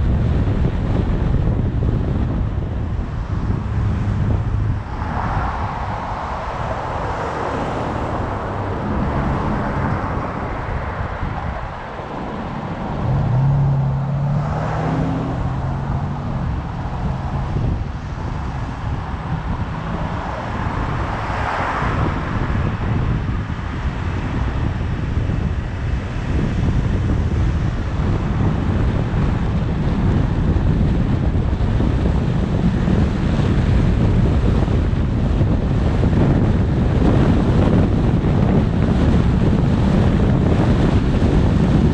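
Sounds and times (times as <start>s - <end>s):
car road rumble: 0.0s - 41.9s
wind noise on microphone: 0.0s - 41.9s.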